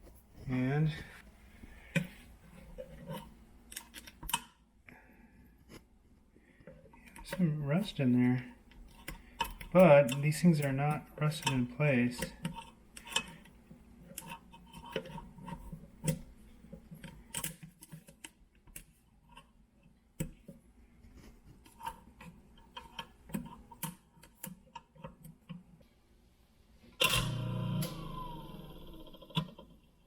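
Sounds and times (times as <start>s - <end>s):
garbage disposal running: 6.9s - 18.0s, 26.9s - 30.0s.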